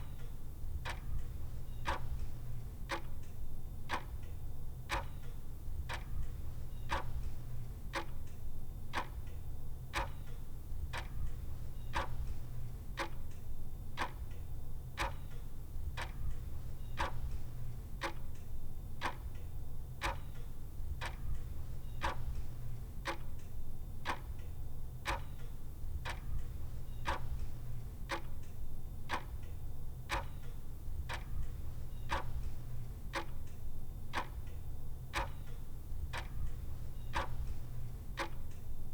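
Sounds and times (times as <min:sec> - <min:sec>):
clock ticking: 0:21.0 - 0:23.3, 0:26.0 - 0:28.5, 0:29.1 - 0:29.3, 0:30.1 - 0:30.5, 0:31.1 - 0:34.5, 0:35.1 - 0:38.6.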